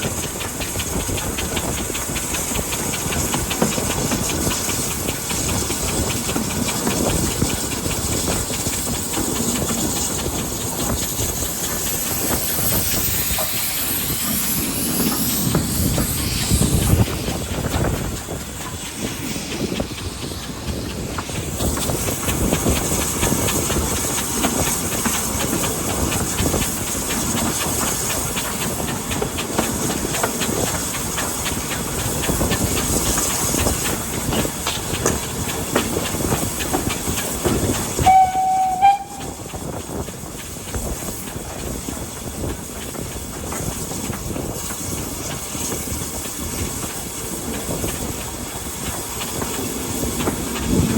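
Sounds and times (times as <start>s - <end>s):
rail clatter: 0.0s - 50.9s
steam locomotive exhaust beats: 0.0s - 50.9s
steam whistle blast: 38.0s - 39.5s.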